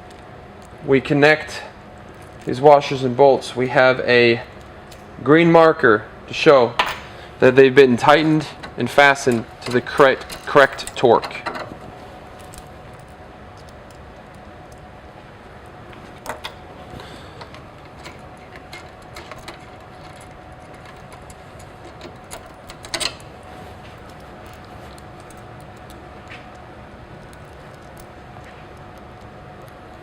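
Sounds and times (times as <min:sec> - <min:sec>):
faint steady hum: 0:00.0 - 0:30.0
metallic clinks of wrenches and bolts: 0:08.2 - 0:11.8, 0:17.4 - 0:23.3.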